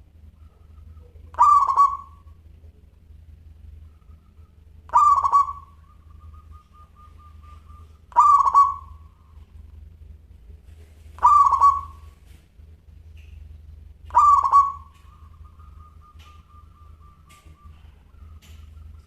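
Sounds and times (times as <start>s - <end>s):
dove cooing: 0.0s - 2.5s, 3.6s - 9.9s, 11.0s - 12.4s, 14.0s - 19.0s.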